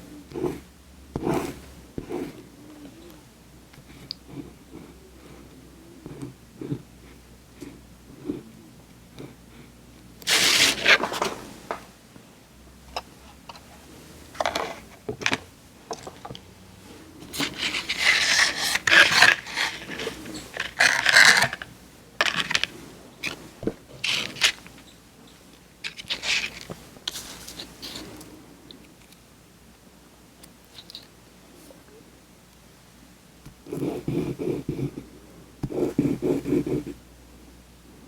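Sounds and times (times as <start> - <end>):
paper scraped torn and crinkled: 10.3 - 11.4, 17.3 - 22.7, 24.0 - 24.7, 25.8 - 26.7.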